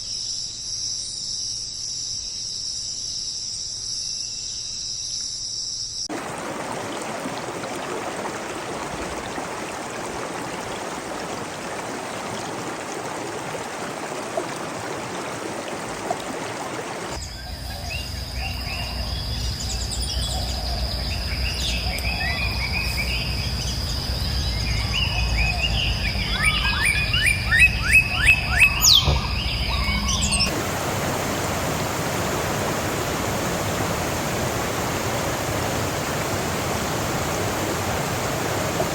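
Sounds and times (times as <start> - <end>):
rushing hiss like flowing water: 6.1 - 17.2, 30.5 - 38.9
birds calling and chirping: 15.2 - 30.5.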